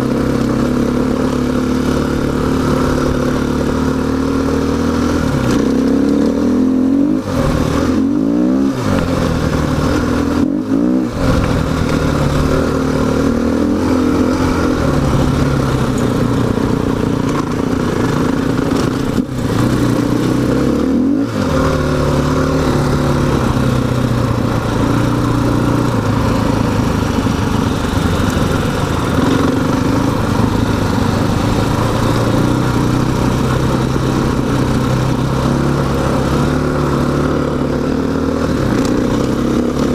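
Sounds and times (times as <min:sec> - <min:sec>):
dirt bike engine revving: 0:00.0 - 0:39.9.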